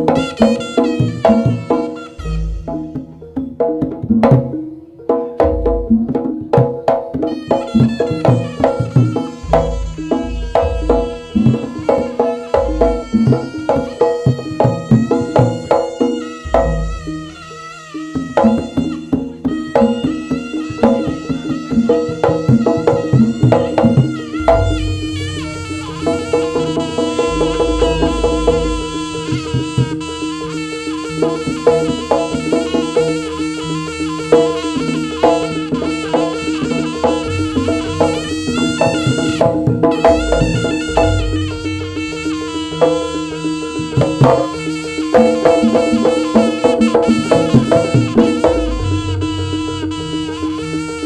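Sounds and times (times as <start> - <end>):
hand drums: 0.0 - 51.0
percussion strokes: 0.0 - 51.0
reedy wavering shawm melody: 0.0 - 51.0
ringing gong-chime notes: 7.6 - 51.0
deep gong strokes: 9.0 - 13.6, 24.2 - 30.4, 37.2 - 43.5, 47.9 - 50.6
sustained gong-chime tones: 24.0 - 35.7.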